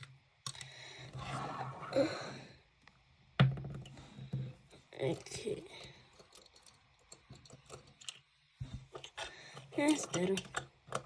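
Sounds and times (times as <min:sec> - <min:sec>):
breathy sigh: 0:01.9 - 0:02.6.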